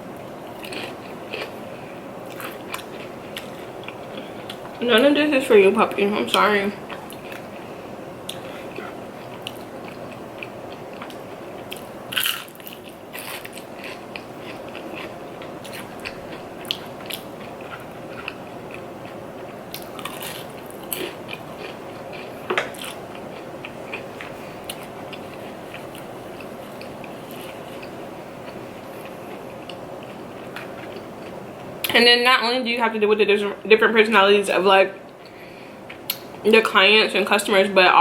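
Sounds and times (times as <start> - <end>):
person chewing and crunching food: 0.5 - 4.8, 6.8 - 31.9.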